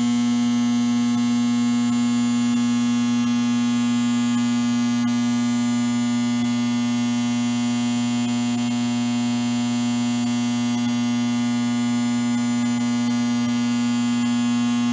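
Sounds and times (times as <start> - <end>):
electrical hum and buzz: 0.0 - 4.3.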